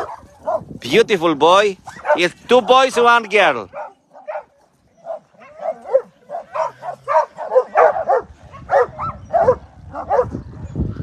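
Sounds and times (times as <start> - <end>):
dog yelping and whining: 3.7 - 7.9.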